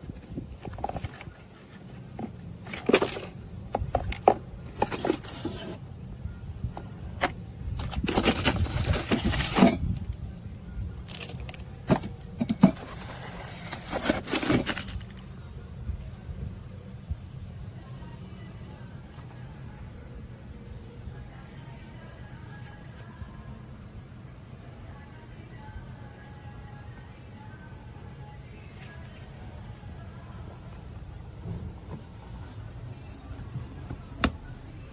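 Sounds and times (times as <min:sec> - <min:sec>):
handling clicks and knocks: 0:00.0 - 0:05.8, 0:06.8 - 0:10.0, 0:11.0 - 0:15.2
rustling or scraping: 0:00.0 - 0:05.8, 0:06.7 - 0:10.2, 0:11.1 - 0:15.2
low steady hum: 0:00.0 - 0:34.9.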